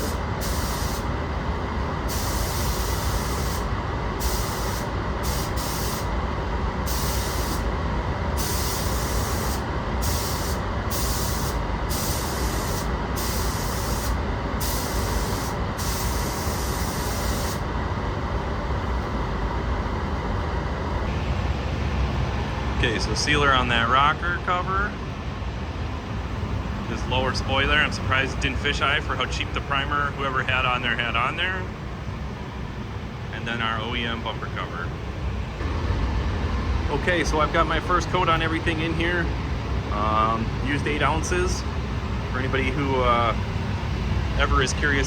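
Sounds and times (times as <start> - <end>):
paint spray gun hissing: 0.0 - 1.1, 2.1 - 6.1, 6.9 - 7.7, 8.4 - 17.6
spray booth air rushing: 0.0 - 1.2, 2.0 - 6.2, 6.8 - 7.7, 8.3 - 17.7.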